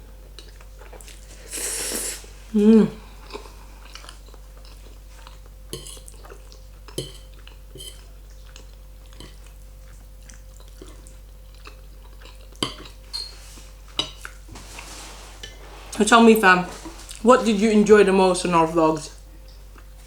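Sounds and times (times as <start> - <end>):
low electrical hum: 0.0 - 20.0
fork clinking and scraping on plate: 7.0 - 8.0.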